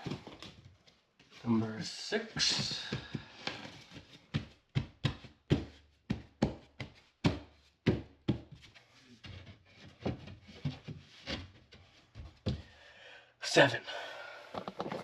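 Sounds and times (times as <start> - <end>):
drywall knocking and tapping: 0.0 - 0.6, 2.6 - 8.8, 9.4 - 11.6.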